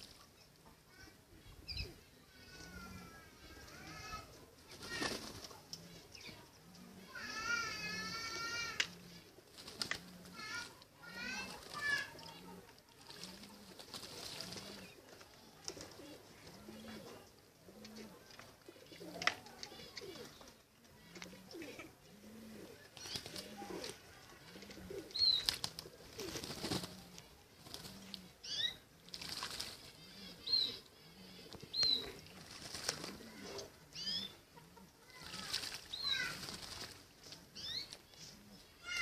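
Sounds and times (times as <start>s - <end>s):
pigeons cooing: 0.8s - 39.0s
wings flapping: 4.7s - 5.7s, 9.5s - 15.0s, 23.0s - 24.0s, 25.3s - 28.3s, 29.1s - 30.0s, 32.0s - 33.7s, 35.1s - 38.0s.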